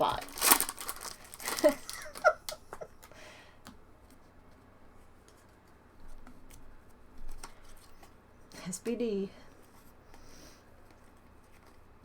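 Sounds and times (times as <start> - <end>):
trading cards being handled: 0.0 - 2.3.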